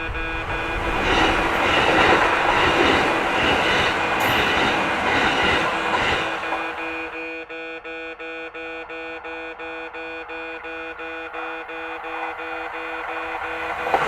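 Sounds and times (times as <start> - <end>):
train wheels clickety-clack: 0.0 - 7.2, 10.0 - 14.0
crossing warning bell ringing: 0.0 - 7.3, 9.2 - 14.0.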